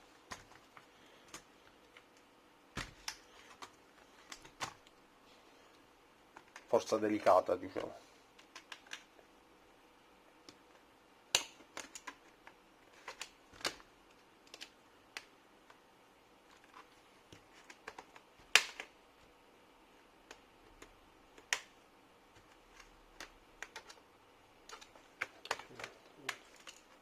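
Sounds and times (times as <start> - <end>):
plastic clips snapping: 2.8 - 4.9, 8.4 - 9.1, 11.3 - 12.2, 13.0 - 15.3, 17.6 - 19.0, 20.2 - 21.8, 22.8 - 24.0, 24.6 - 27.0
plastic clips clicking: 11.3 - 12.2, 13.0 - 15.3, 17.6 - 19.0, 22.8 - 24.0, 24.6 - 27.0.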